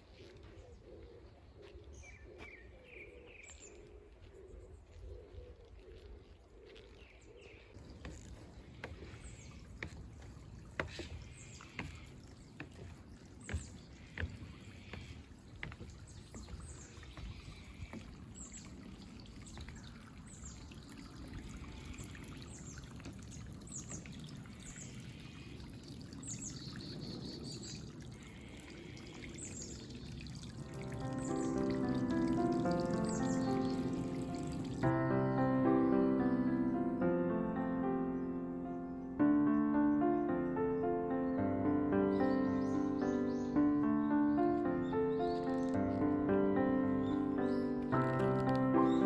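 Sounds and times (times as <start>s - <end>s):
bird chirping: 31.0s - 34.9s, 42.0s - 49.0s.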